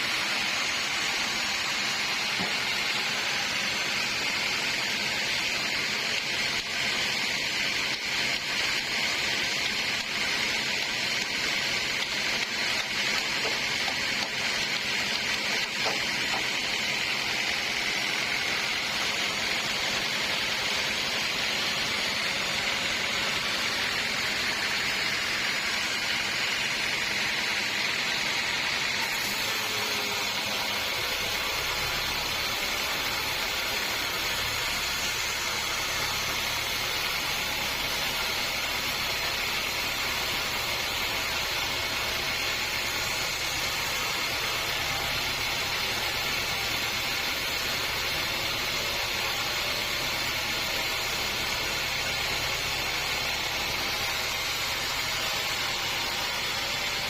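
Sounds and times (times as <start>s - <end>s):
sawmill saw running: 0.0s - 57.0s.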